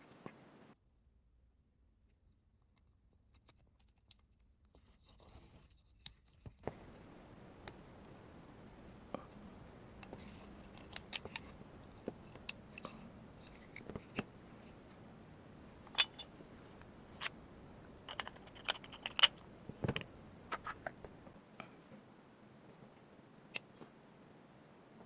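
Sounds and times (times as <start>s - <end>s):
small parts clicking and tapping: 9.0s - 14.8s, 15.8s - 21.4s.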